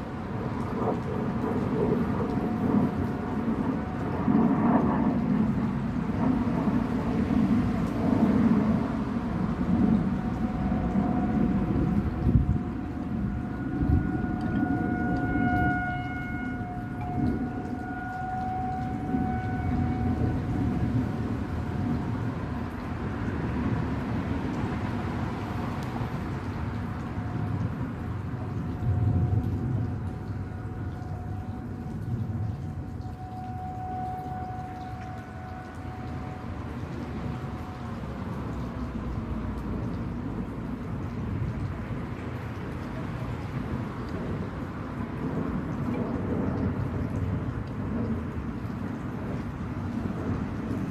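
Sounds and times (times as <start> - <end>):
steady low rumble: 0.0 - 14.8
warning siren steady tone: 0.0 - 50.9.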